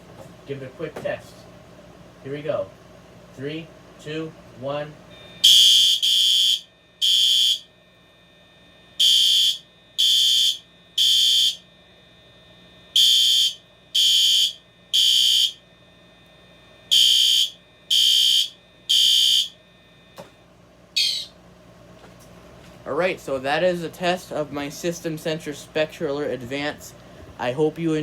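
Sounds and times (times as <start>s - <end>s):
fire alarm horn beeping: 5.1s - 20.2s, 20.9s - 21.4s.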